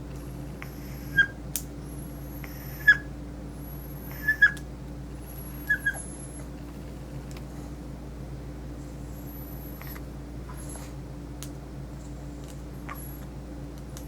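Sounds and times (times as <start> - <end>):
steady low hum: 0.0 - 14.0
puppy yelping: 0.6 - 1.4, 2.4 - 3.1, 4.1 - 4.6, 5.6 - 6.4.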